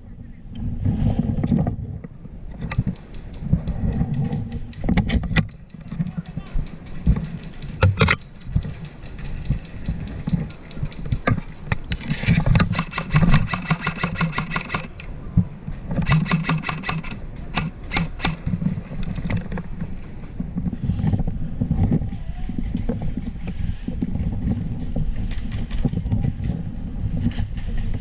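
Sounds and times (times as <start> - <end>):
low handling rumble and wind: 0.0 - 28.0
airsoft gun firing bursts: 12.6 - 14.9, 16.0 - 18.4.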